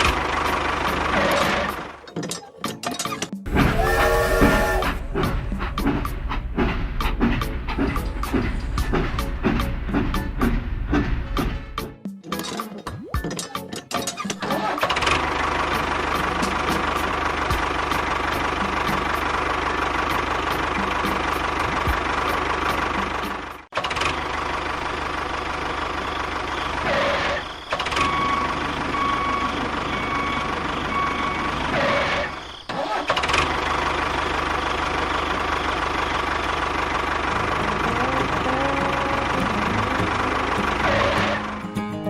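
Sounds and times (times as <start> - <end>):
engine running: 0.0 - 2.2, 3.5 - 11.8, 14.8 - 41.9
short reversing alarm beeps: 27.9 - 32.0.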